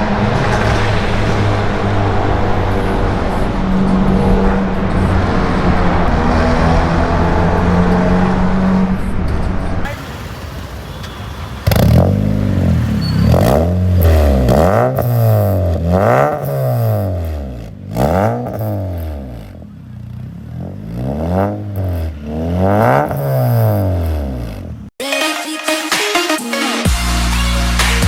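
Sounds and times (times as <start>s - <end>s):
car engine revving: 0.0s - 24.9s
electronic music: 25.0s - 28.0s.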